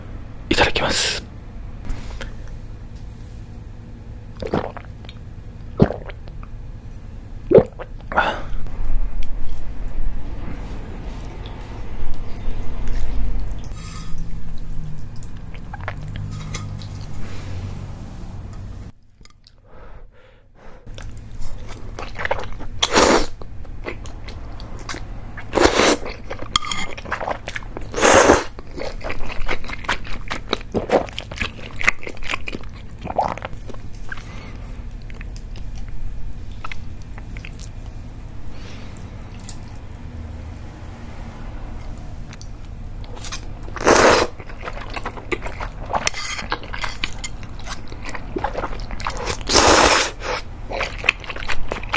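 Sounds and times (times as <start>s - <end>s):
wet chewing and mouth sounds: 4.4s - 6.6s, 11.3s - 17.3s, 20.9s - 38.0s, 38.6s - 40.1s, 41.8s - 51.9s.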